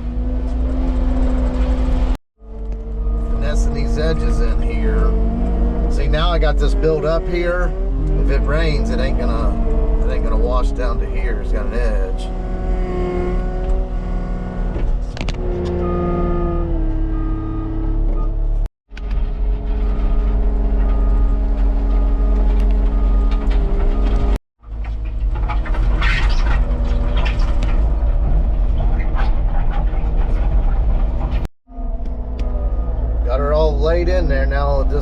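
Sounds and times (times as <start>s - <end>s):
diesel engine running hard: 0.0s - 14.6s.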